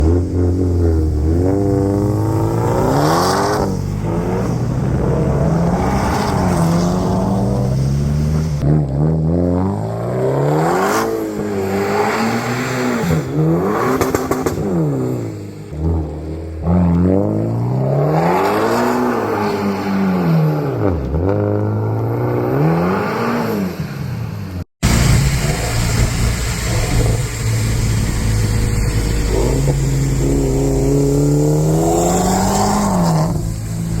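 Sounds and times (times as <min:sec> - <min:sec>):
car engine revving: 0:00.0 - 0:24.0, 0:24.8 - 0:34.0
heavy low rumble: 0:24.8 - 0:34.0.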